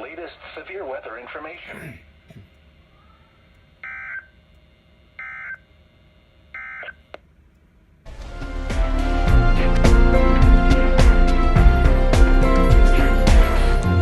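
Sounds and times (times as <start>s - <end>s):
music: 8.1s - 14.0s.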